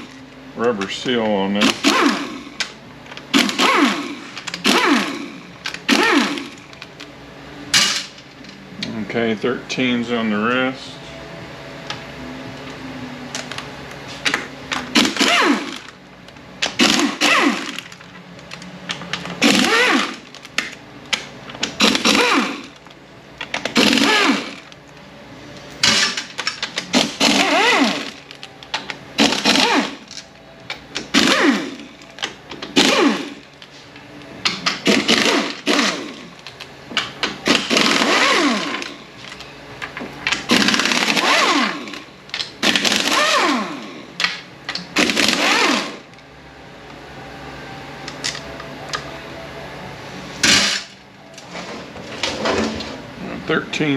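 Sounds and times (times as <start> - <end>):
power tool whining: 1.6 - 2.7, 3.3 - 6.8, 16.7 - 18.0, 19.4 - 20.4, 21.6 - 22.8, 23.6 - 24.8, 25.9 - 28.4, 29.2 - 30.1, 31.1 - 33.4, 34.8 - 36.4, 37.4 - 39.0, 40.5 - 44.1, 45.0 - 46.1.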